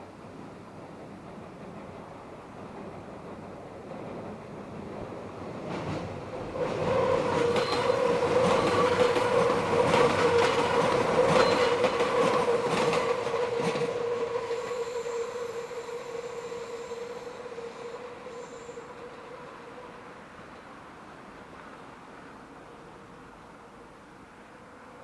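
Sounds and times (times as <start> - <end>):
train wheels squealing on rail: 5.9 - 21.3.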